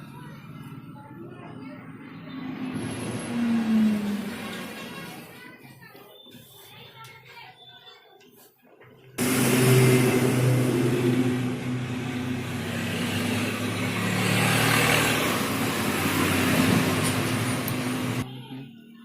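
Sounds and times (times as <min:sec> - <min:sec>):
motor humming loudly: 0:09.2 - 0:18.2.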